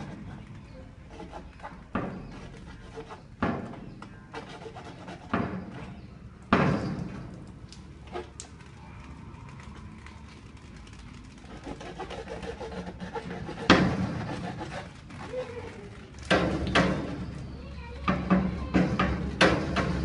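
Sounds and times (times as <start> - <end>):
sharp knocks: 3.3 - 4.0, 18.1 - 20.0.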